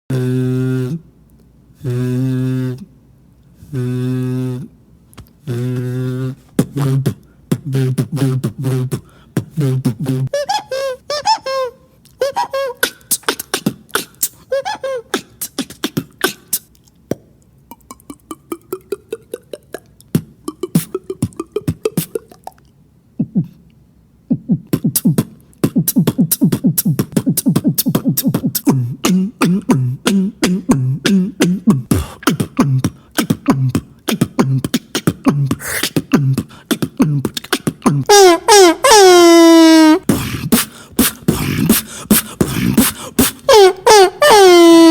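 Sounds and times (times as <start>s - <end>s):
gliding pitched mouth tone: 0.1s - 1.1s, 1.8s - 3.0s, 3.6s - 4.8s, 5.4s - 11.0s, 12.2s - 44.9s
beatboxing mouth clicks and pops: 5.1s - 10.3s, 12.8s - 14.5s, 15.1s - 38.1s, 40.0s - 43.5s
low drum-like beatbox pulses: 15.2s - 22.4s, 23.2s - 23.6s, 24.3s - 38.1s, 40.0s - 43.5s.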